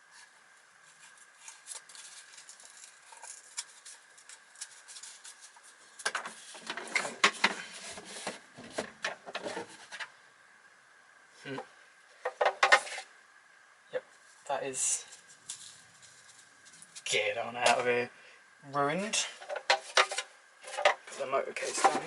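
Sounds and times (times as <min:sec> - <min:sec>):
plastic parts scraping: 0:01.0 - 0:10.1, 0:12.2 - 0:13.1, 0:19.4 - 0:22.0.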